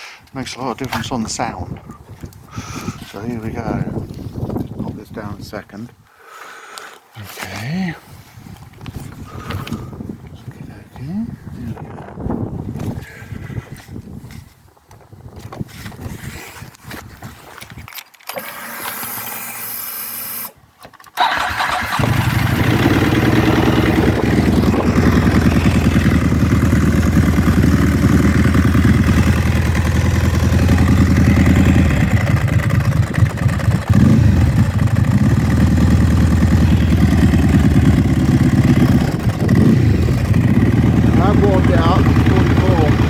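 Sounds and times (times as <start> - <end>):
motorcycle starter cranking: 18.2 - 43.0
motorcycle engine idling: 21.2 - 43.0.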